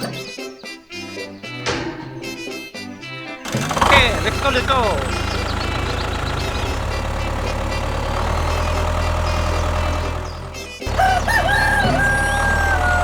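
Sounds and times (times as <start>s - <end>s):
rooster crowing: 10.8s - 13.0s.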